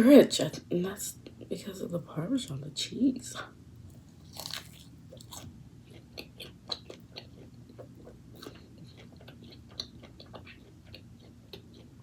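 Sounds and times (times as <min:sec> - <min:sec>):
person chewing food: 0:03.9 - 0:12.0.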